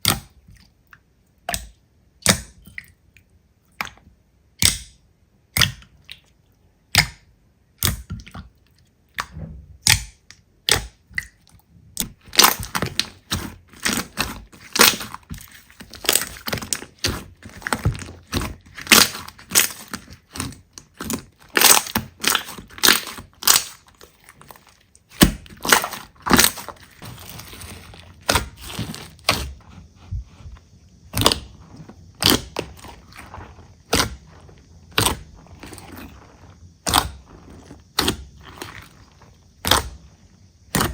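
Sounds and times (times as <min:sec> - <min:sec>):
slime popping and crackling: 0:12.0 - 0:29.6, 0:31.1 - 0:40.1, 0:40.7 - 0:40.9.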